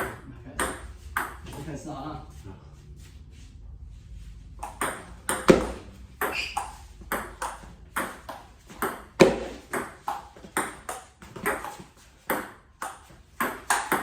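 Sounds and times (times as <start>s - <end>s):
table tennis ball hits: 0.0s - 1.6s, 4.6s - 14.0s.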